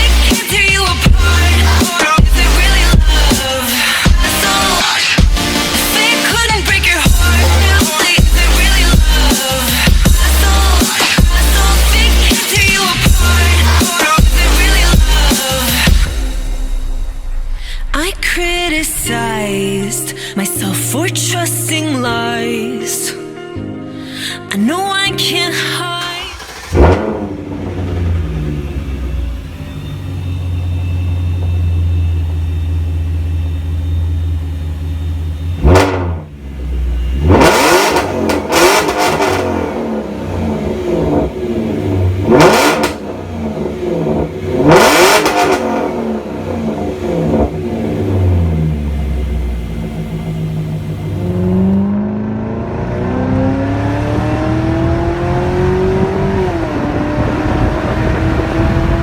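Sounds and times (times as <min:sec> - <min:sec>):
car engine idling and revving: 0:00.0 - 0:19.9, 0:26.0 - 0:59.0
car accelerating away: 0:26.2 - 0:59.0.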